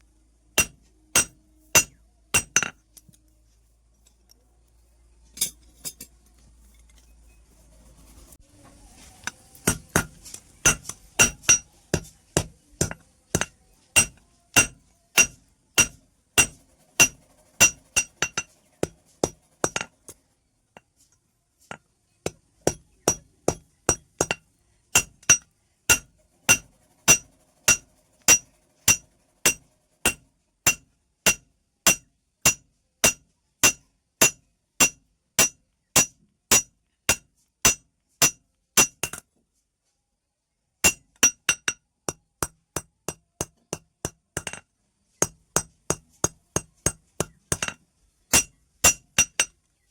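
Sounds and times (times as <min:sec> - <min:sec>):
hammer blows on metal: 0:09.2 - 0:20.0.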